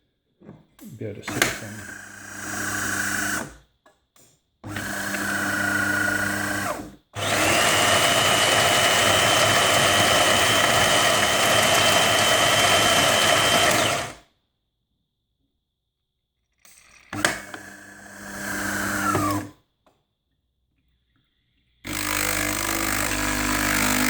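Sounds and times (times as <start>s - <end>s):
coffee grinder grinding beans: 4.7s - 14.2s
coffee machine motor humming: 4.7s - 14.2s.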